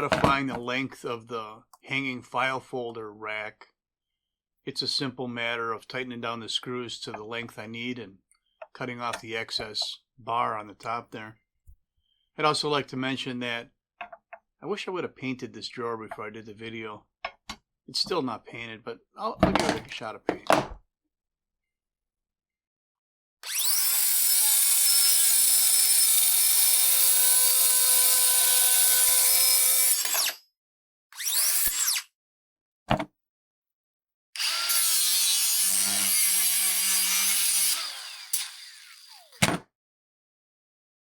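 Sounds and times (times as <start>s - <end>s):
power tool cutting metal bar: 23.4s - 30.4s, 31.2s - 32.1s, 34.4s - 39.5s.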